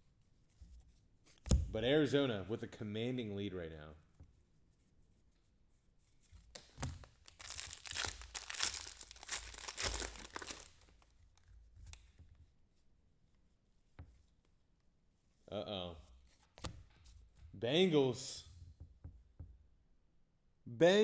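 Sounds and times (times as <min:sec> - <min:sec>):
foil wrapper tearing and crinkling: 0:06.6 - 0:11.1.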